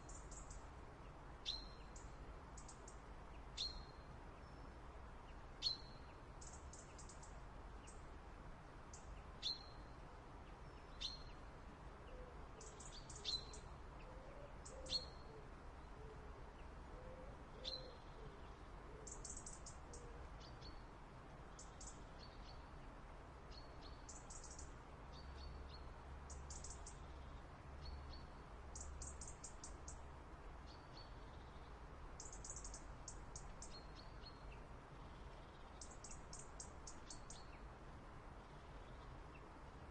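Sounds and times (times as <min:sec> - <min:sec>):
songbird single chirps: 0:00.0 - 0:00.7, 0:01.4 - 0:04.8, 0:05.6 - 0:08.0, 0:08.9 - 0:10.0, 0:10.6 - 0:16.1, 0:17.0 - 0:20.9, 0:21.5 - 0:22.8, 0:23.5 - 0:30.0, 0:30.6 - 0:37.7.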